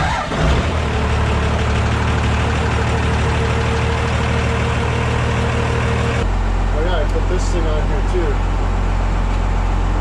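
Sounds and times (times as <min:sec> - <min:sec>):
engine whine: 0:00.0 - 0:10.0
van engine starting and idling: 0:00.0 - 0:10.0.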